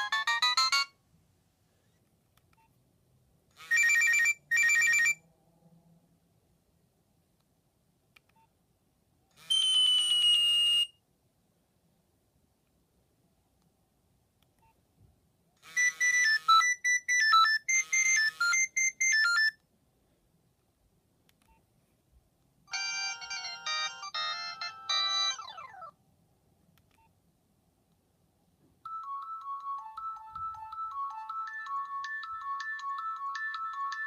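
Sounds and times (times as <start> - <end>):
phone ringtone melodies: 0.0 - 1.0, 3.7 - 5.2, 15.7 - 19.6, 22.7 - 25.9, 28.9 - 34.0.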